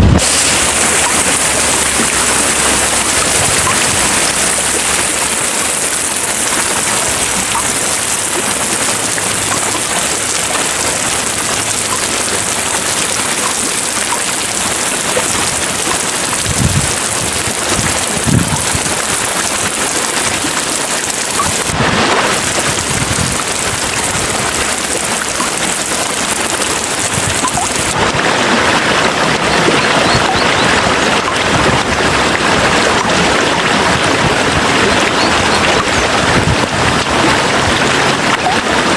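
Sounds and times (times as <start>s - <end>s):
low rumbles: 0.0s - 29.8s
heavy rain falling: 0.0s - 38.9s.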